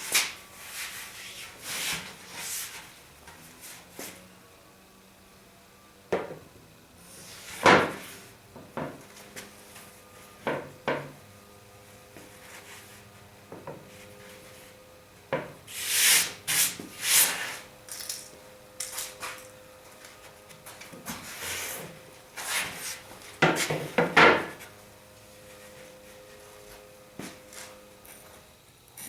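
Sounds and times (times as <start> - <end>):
tools knocking and clunking: 15.3 - 15.6, 23.4 - 24.6.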